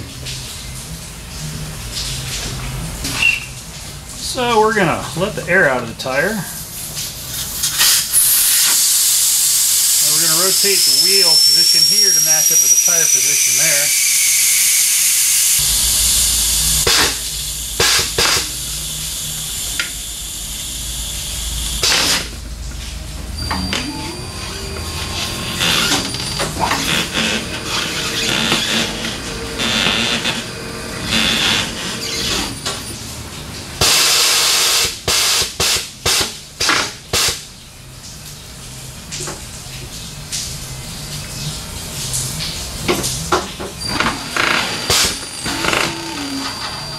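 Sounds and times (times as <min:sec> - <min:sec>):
air hissing from tire: 0:06.6 - 0:22.4
compressed air blasts: 0:14.5 - 0:18.8.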